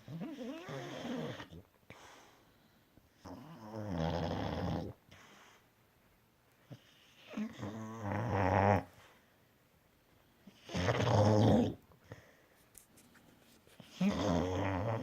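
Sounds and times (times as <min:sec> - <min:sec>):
dog snoring: 0:00.0 - 0:01.7, 0:03.2 - 0:05.0, 0:06.7 - 0:09.0, 0:10.4 - 0:11.8, 0:13.8 - 0:15.0
quiet breaths: 0:00.0 - 0:03.8, 0:04.9 - 0:08.2, 0:08.8 - 0:10.9, 0:11.7 - 0:15.0.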